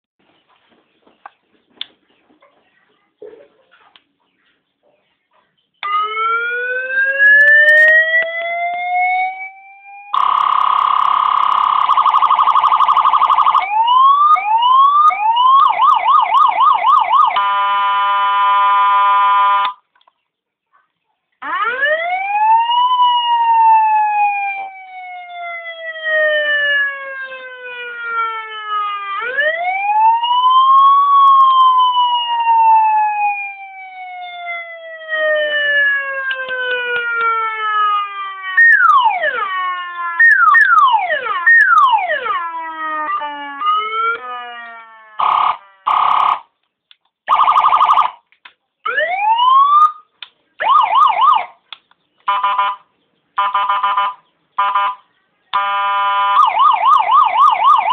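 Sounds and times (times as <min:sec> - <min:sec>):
rising manual siren sweep: 0:05.8 - 0:19.7, 0:21.4 - 0:46.4, 0:47.3 - 0:48.2, 0:50.6 - 0:51.6, 0:55.6 - 0:57.9
siren rapid downward sweeps: 0:05.8 - 0:19.7, 0:21.4 - 0:46.4
electronic siren wailing: 0:05.8 - 0:19.8, 0:21.4 - 0:46.5, 0:47.3 - 0:48.2, 0:50.6 - 0:51.6, 0:55.6 - 0:57.9
horn-tone blasts: 0:52.3 - 0:52.8.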